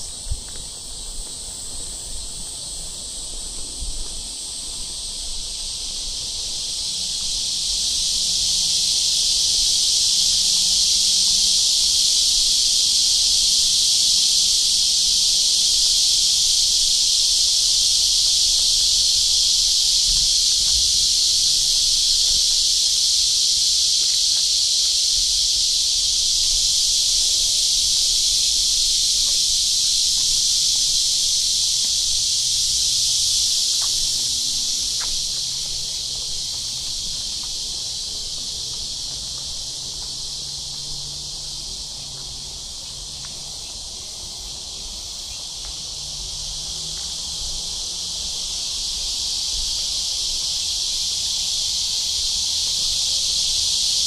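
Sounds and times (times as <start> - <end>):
cicadas droning: 0.0 - 54.0.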